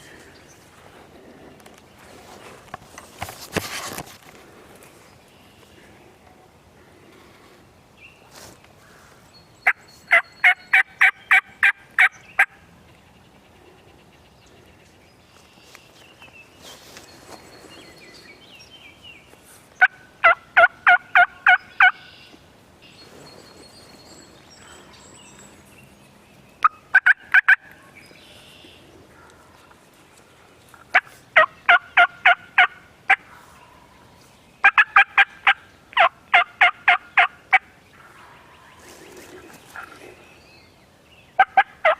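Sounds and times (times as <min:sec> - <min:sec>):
faint songbird chirps: 0:08.0 - 0:20.0, 0:21.1 - 0:26.9, 0:27.7 - 0:30.9
wild turkey calling: 0:09.6 - 0:12.6, 0:19.8 - 0:22.4, 0:26.6 - 0:29.7, 0:30.9 - 0:34.0, 0:34.6 - 0:40.3, 0:41.4 - 0:41.9.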